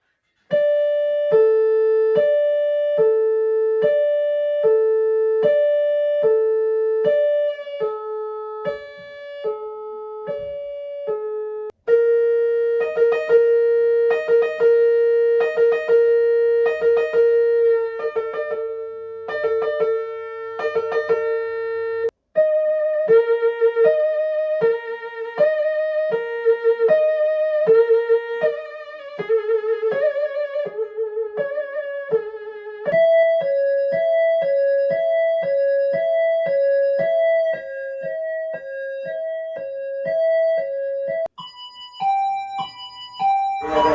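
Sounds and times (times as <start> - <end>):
siren notes played on keyboard: 0.5 - 43.9.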